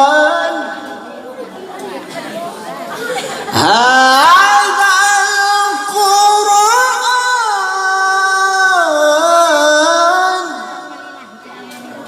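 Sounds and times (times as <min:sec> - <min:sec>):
man reciting melodically: 0:00.0 - 0:01.2, 0:03.5 - 0:11.4.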